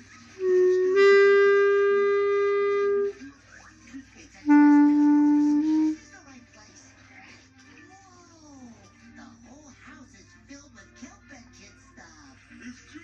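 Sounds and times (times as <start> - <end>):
clarinet long held notes: 0.4 - 3.3, 4.4 - 6.0.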